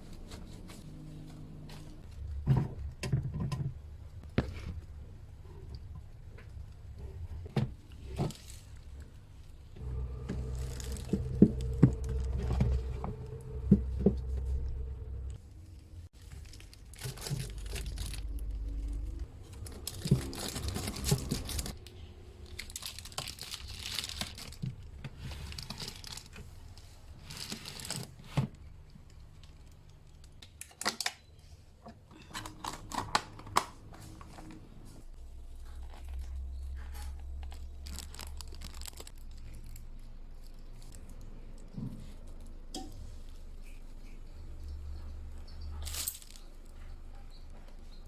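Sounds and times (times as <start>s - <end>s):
plastic packaging crinkling and tearing: 9.8s - 13.6s, 16.2s - 28.2s, 32.3s - 34.6s, 35.6s - 41.2s, 45.8s - 46.6s.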